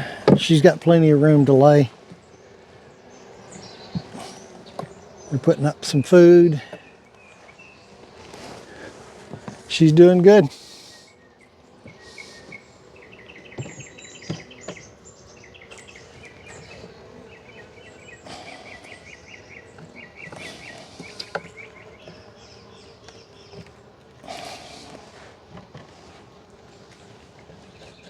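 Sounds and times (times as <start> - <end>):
honeybees buzzing: 0.0 - 28.0
bird chirping trills: 1.4 - 8.0, 10.7 - 23.9.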